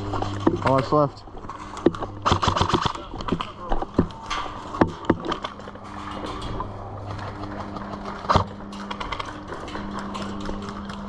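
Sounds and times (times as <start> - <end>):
steady low hum: 0.0 - 11.0
sharp crack: 1.9 - 4.5.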